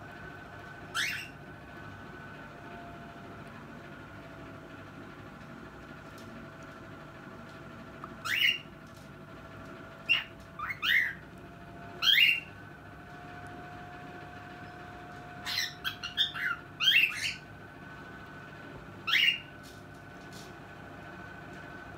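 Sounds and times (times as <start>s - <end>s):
cockatiel calling: 0.9s - 1.4s, 8.2s - 8.7s, 10.0s - 11.2s, 12.0s - 12.5s, 15.4s - 17.5s, 19.0s - 19.5s.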